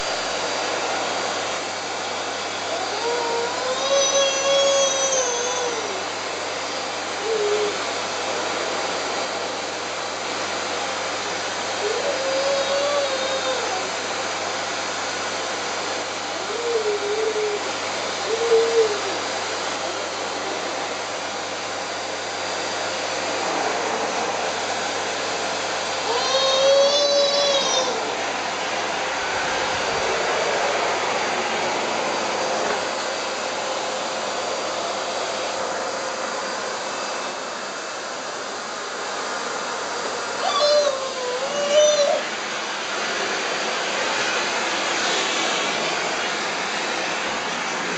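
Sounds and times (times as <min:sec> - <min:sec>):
vacuum cleaner running: 0:00.0 - 0:47.9
high voice calling oooh: 0:02.6 - 0:06.1, 0:07.2 - 0:07.9, 0:11.8 - 0:14.0, 0:16.4 - 0:20.9, 0:26.0 - 0:28.3, 0:40.4 - 0:42.4.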